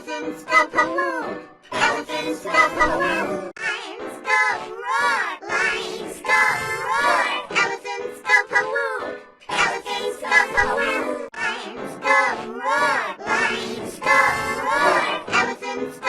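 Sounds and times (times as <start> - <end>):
children's song with processed vocals: 0.0 - 16.0.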